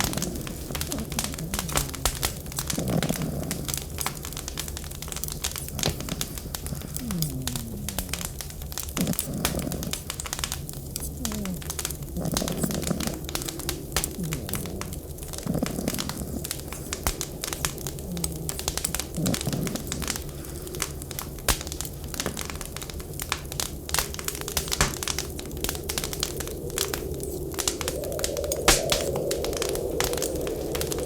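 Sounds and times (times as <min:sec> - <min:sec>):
low rumble: 0:00.0 - 0:10.3
wood fire crackling and popping: 0:00.0 - 0:31.0.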